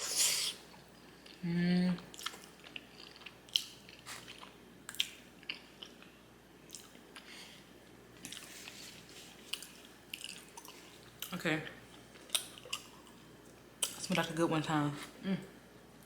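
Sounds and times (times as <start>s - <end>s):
person chewing noodles: 2.0s - 6.1s, 6.7s - 7.3s, 8.2s - 11.3s, 12.1s - 14.0s.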